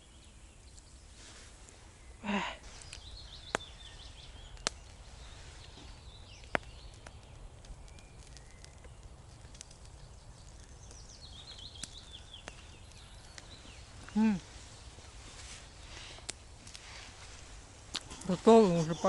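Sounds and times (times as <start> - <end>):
campfire coals crackling: 0.0 - 19.0
small songbird twittering: 2.0 - 9.1, 9.9 - 15.9.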